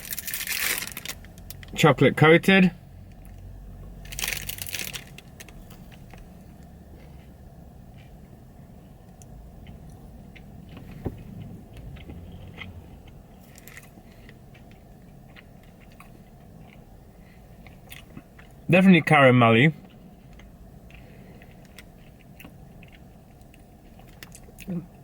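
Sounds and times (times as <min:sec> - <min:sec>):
faint chewing: 0:09.1 - 0:18.7, 0:19.8 - 0:25.0.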